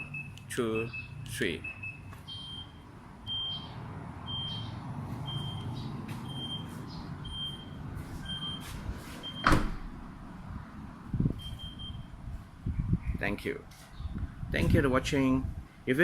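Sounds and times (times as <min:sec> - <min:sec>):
short high warning beeps: 0:06.3 - 0:09.5.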